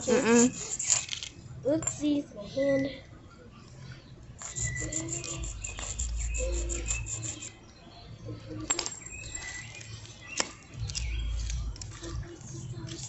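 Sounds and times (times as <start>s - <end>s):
low rumbles: 10.8s - 12.6s.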